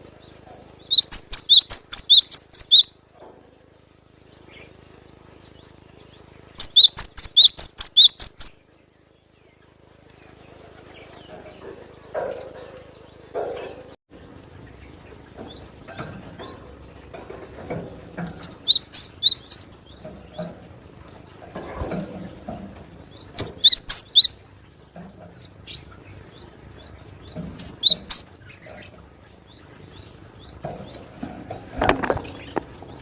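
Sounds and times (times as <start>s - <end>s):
bird chirping rapidly: 0.0s - 3.0s, 4.2s - 9.7s, 18.4s - 20.6s, 23.0s - 24.5s, 25.6s - 31.3s.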